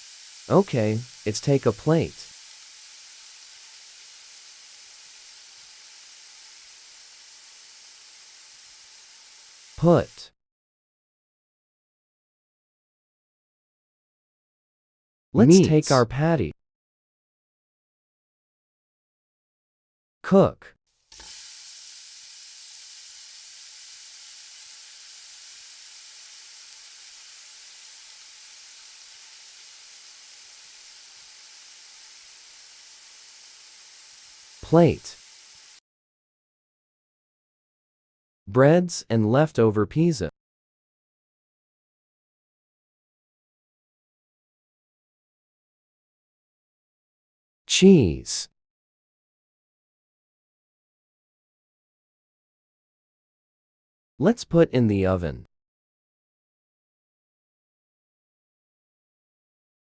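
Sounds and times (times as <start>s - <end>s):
toy stove sizzling sound effect: 0.0s - 10.3s, 21.1s - 35.8s.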